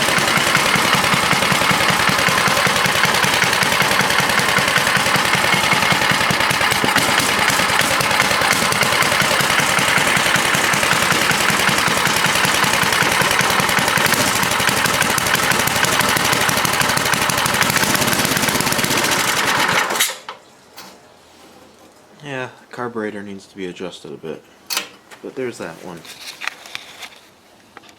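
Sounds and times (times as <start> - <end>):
small gas engine running: 0.0 - 20.2.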